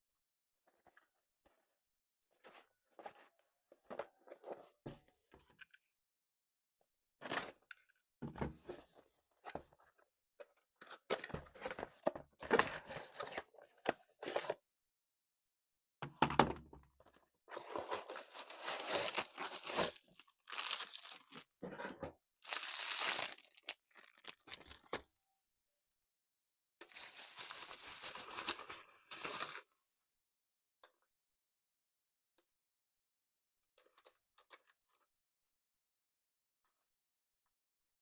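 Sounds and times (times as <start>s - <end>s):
packaging torn and crinkled: 18.1s - 21.4s, 22.4s - 25.0s.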